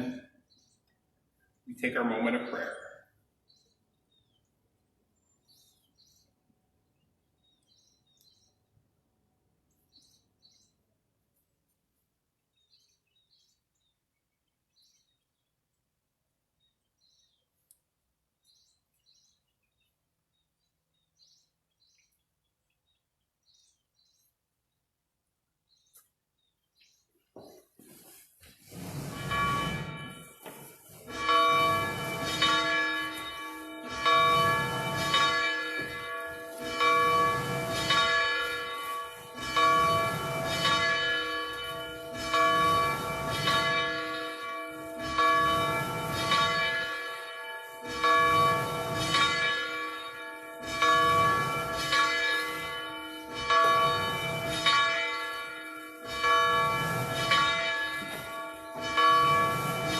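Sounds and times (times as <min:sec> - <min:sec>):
church bell ringing: 0:28.8 - 0:59.9.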